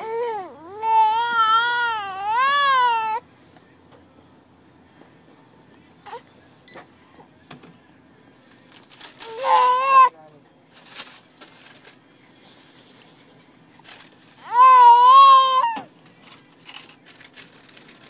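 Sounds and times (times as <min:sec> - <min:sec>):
baby screaming: 0:00.0 - 0:03.2, 0:09.2 - 0:10.1, 0:14.4 - 0:15.9.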